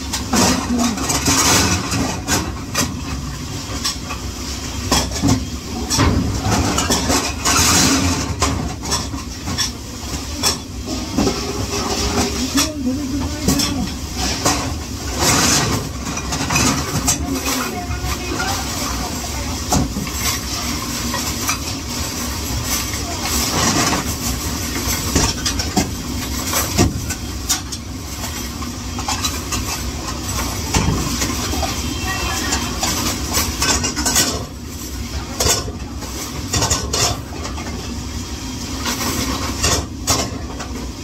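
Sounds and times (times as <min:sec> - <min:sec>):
dishes and utensils clattering: 0:00.1 - 0:04.3, 0:04.9 - 0:21.8, 0:22.6 - 0:34.6, 0:35.2 - 0:38.0.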